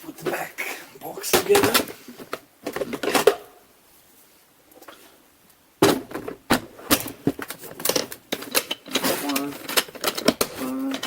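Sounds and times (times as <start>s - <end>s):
plastic parts clicking together: 6.9s - 11.0s.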